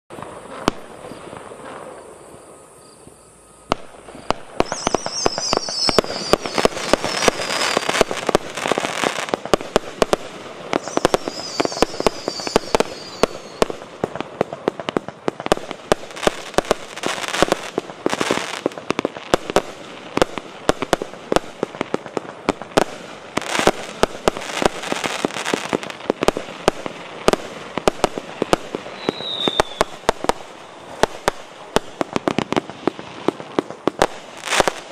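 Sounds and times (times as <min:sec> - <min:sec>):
firework whistles: 0:00.1 - 0:13.9, 0:22.8 - 0:33.3
firework bangs and crackle: 0:00.1 - 0:34.9.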